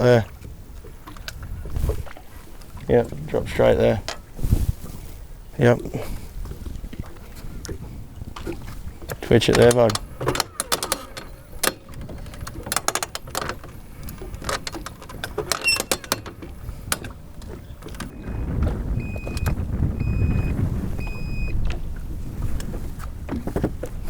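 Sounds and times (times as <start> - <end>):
scattered clicks and knocks: 9.1 - 19.6
low rumble: 16.6 - 22.4.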